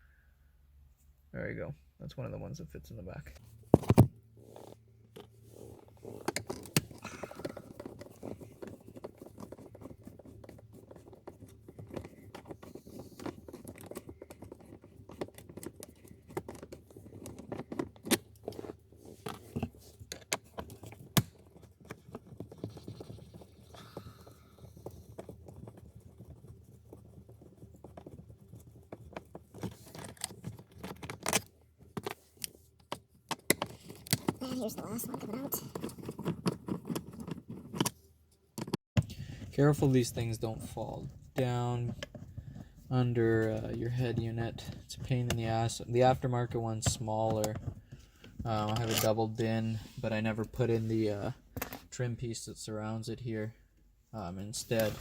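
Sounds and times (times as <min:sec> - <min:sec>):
loose screws and trim handled: 0:03.7 - 0:38.0.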